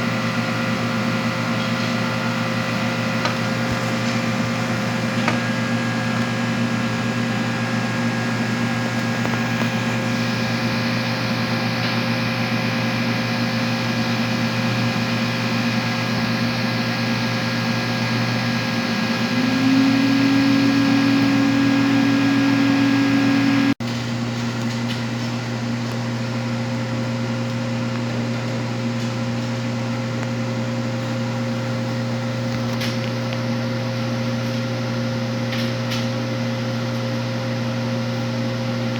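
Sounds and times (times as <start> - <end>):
higher machine hum: 0.0 - 24.3
electrical hum and machine drone: 0.0 - 38.9.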